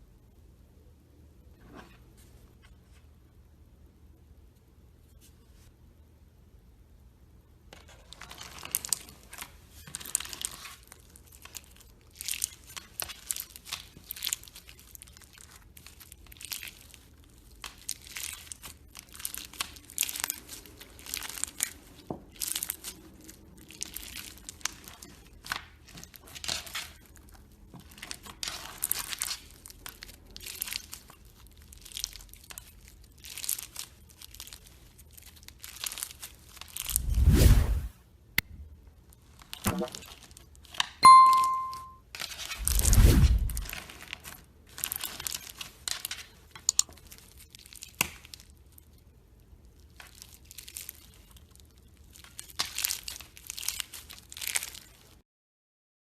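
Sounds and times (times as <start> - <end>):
slime crackling and popping: 8.4 - 37.2, 42.6 - 55.2.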